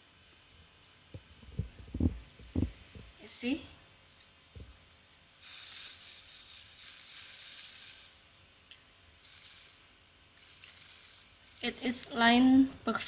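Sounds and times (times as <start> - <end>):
beads rattling in plastic tray: 5.4 - 8.3, 9.2 - 12.1.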